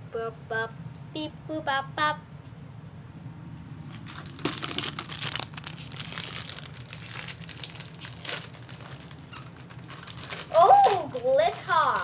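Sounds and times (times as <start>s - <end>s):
wrapper tearing and crinkling: 4.0s - 12.0s.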